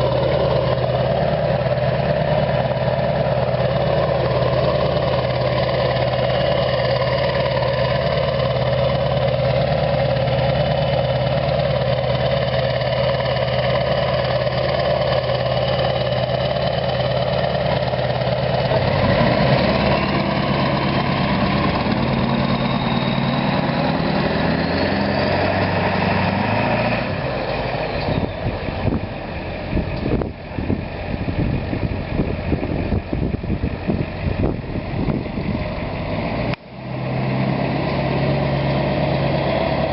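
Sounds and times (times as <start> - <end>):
diesel truck engine idling: 0.0 - 39.9
truck driving past: 0.0 - 39.9
turbo whistle: 22.3 - 23.8.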